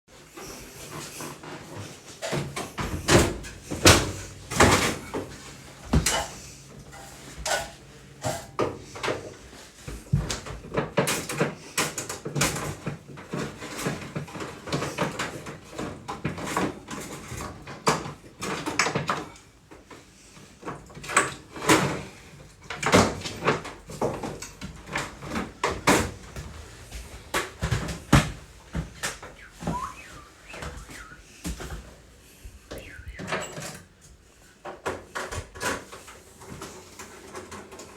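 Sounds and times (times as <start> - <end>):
knocks and clunks of handling: 0.9 - 31.9.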